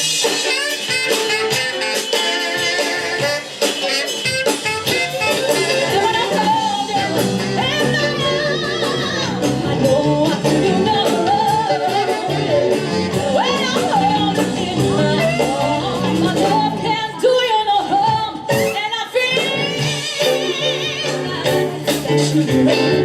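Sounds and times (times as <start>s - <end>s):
bass: 0.0s - 23.0s
soul band playing: 0.0s - 23.0s
person singing: 4.8s - 23.0s.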